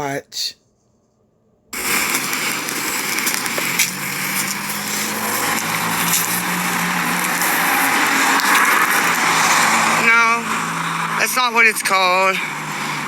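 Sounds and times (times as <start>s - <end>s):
rain hissing: 1.8s - 13.0s.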